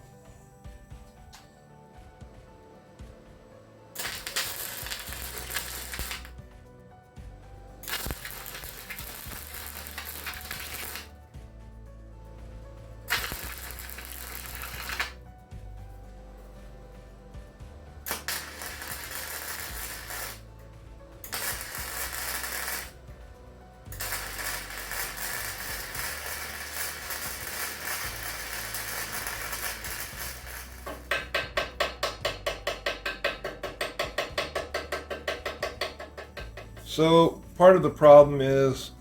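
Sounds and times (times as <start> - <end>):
background music with bass line: 0.0 - 39.0
power tool noise: 4.0 - 6.4, 7.8 - 11.1, 13.1 - 15.2, 18.1 - 20.4, 21.2 - 23.0, 23.9 - 31.4.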